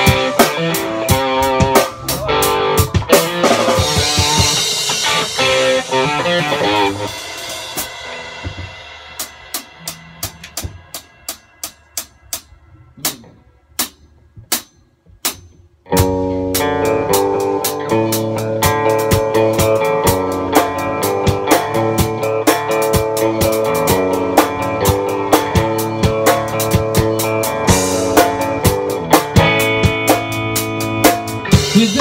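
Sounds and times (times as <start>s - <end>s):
band playing: 0.0s - 14.4s, 15.9s - 32.0s
single drum hits: 8.4s - 8.8s, 10.3s - 11.1s.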